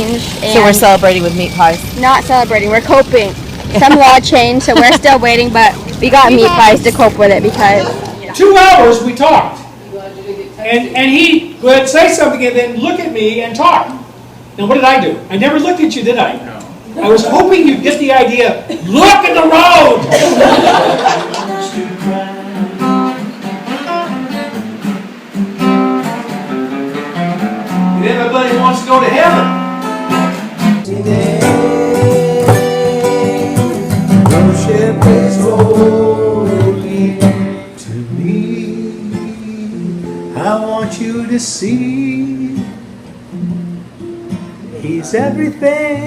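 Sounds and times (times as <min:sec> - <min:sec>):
acoustic guitar strumming chords: 0:00.0 - 0:09.2, 0:19.9 - 0:46.0
person singing long notes: 0:30.9 - 0:42.9.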